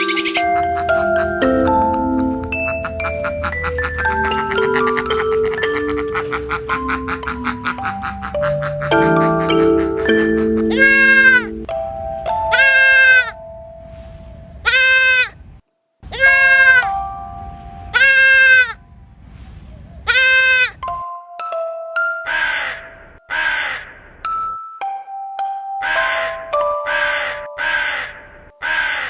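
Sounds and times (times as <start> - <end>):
bell-like background music: 0.0 - 14.6, 16.8 - 19.1, 20.8 - 23.3, 24.3 - 28.6
goat bleating: 8.1 - 11.6, 16.1 - 16.9, 18.0 - 18.8, 20.1 - 20.7.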